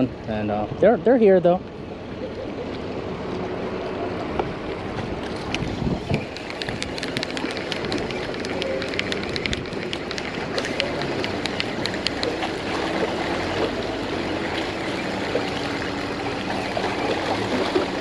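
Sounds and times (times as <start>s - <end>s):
water lapping at shore: 1.0s - 18.0s
wind on microphone: 4.2s - 18.0s
small sharp ticks: 5.5s - 12.4s.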